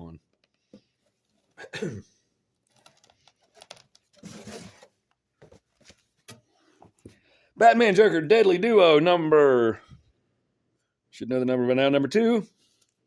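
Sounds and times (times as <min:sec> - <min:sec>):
paper and cardboard rustling: 0:02.7 - 0:07.0.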